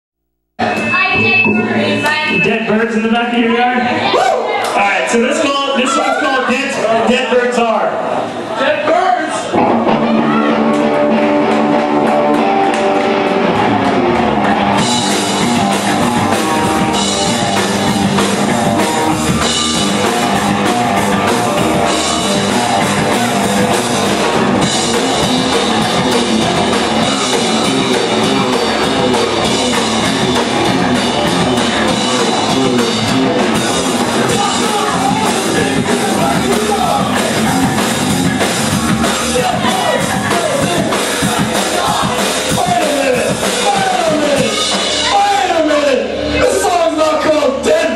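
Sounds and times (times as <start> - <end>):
rock song with singing: 0.6 - 3.1, 9.4 - 47.9.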